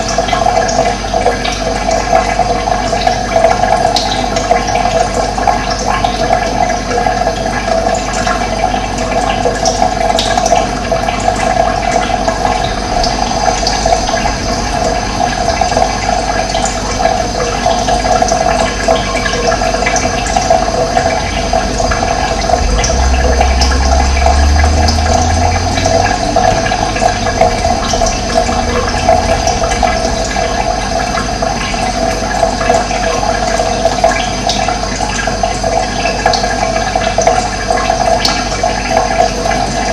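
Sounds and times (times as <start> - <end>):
water rushing: 0.0 - 39.9
low rumble: 11.3 - 34.2.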